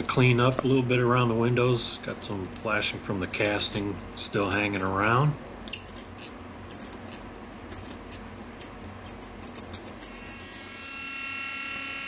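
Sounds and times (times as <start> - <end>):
high motor whine: 10.3 - 12.0.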